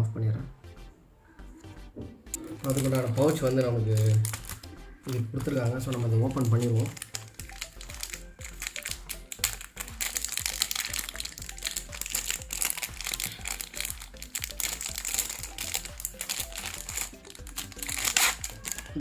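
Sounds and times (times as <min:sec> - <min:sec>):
background music: 0:00.0 - 0:19.0
packaging crinkling and rustling: 0:02.4 - 0:19.0.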